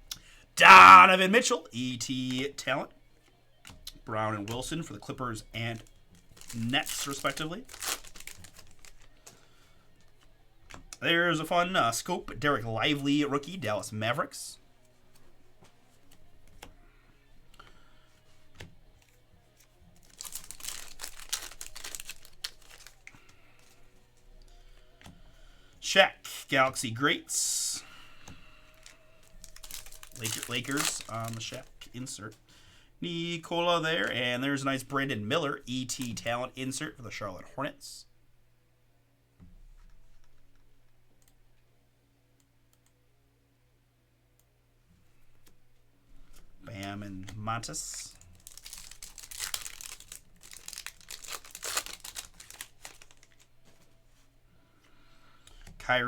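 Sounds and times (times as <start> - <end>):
foil wrapper crinkling and tearing: 0.6 - 1.1, 5.6 - 10.3, 19.9 - 23.9, 28.7 - 31.9, 47.3 - 53.9
trading cards clicking: 20.0 - 23.8, 28.2 - 31.7, 46.3 - 53.8.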